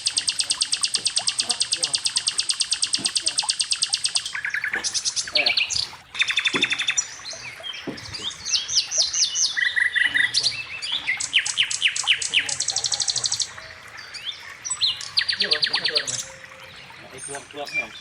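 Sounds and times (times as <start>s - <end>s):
songbirds chirping and singing: 0.0s - 18.0s.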